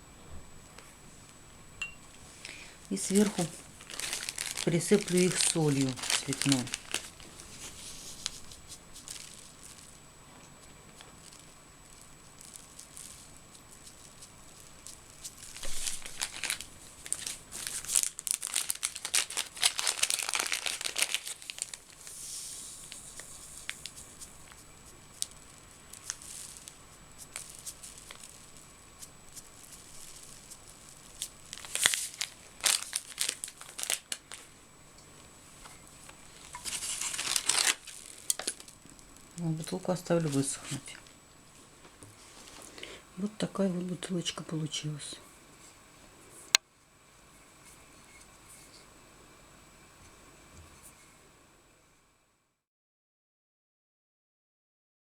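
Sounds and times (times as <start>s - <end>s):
salt rustling and crackling: 2.4s - 10.0s, 10.9s - 34.6s, 35.5s - 40.6s.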